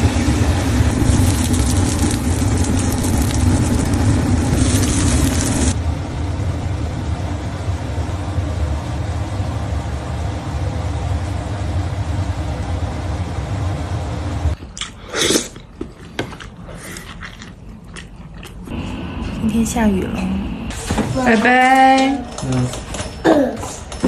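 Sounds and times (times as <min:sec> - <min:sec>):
steady low rumble: 0:00.0 - 0:14.6.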